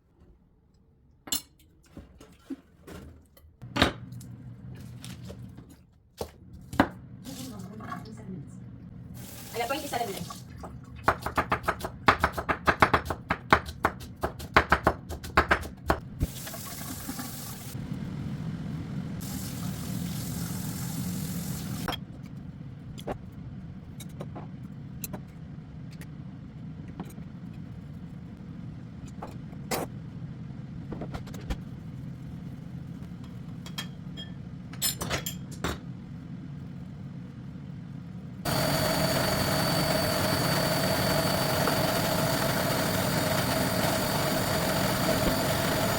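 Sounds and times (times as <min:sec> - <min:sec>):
kitchen appliance humming: 0:06.6 - 0:21.9, 0:38.4 - 0:45.9.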